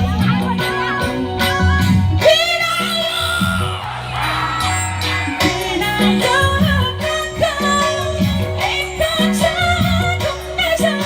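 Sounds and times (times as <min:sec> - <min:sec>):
instrumental backing music: 0:00.0 - 0:11.0
person singing: 0:02.5 - 0:08.2.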